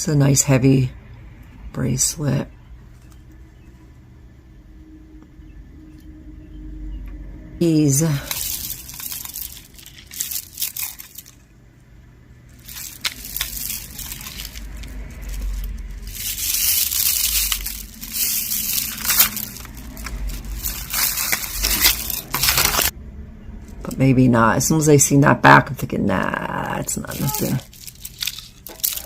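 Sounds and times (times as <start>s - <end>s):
rummaging through jewelry: 7.7s - 11.6s, 12.5s - 22.9s, 26.9s - 29.0s.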